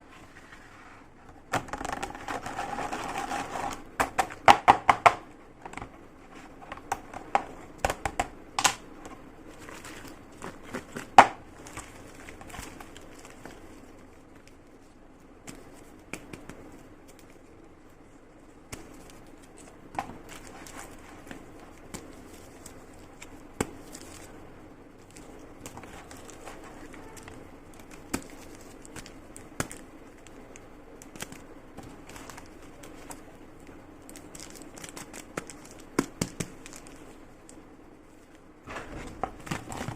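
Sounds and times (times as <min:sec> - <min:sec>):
plastic packaging crinkling: 0:08.6 - 0:14.9, 0:18.7 - 0:39.9.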